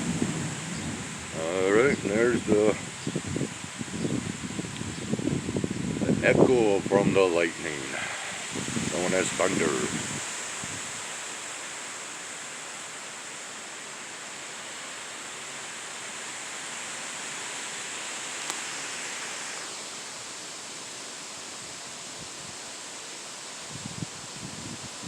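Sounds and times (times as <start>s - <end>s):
rain falling: 0.0s - 23.7s
faint click: 18.4s - 18.6s.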